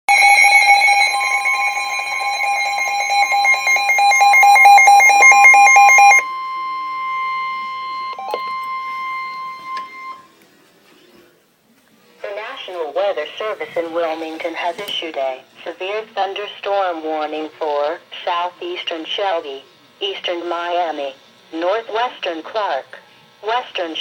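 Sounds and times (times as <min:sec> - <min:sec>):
rapid warbling data signal: 0:00.1 - 0:06.2
loud steady alert tones: 0:00.1 - 0:10.3.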